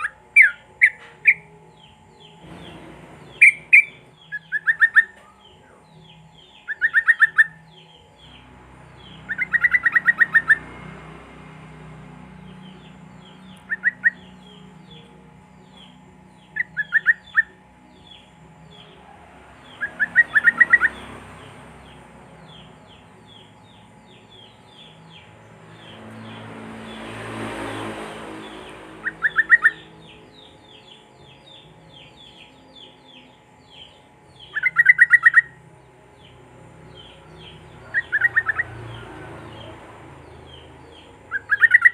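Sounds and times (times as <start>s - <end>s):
bulbuls singing: 0.0s - 41.9s.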